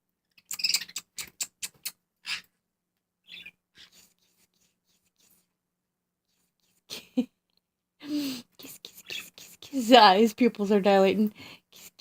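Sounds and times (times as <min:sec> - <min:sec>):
parrot chirp: 0:00.3 - 0:02.6, 0:03.2 - 0:05.0.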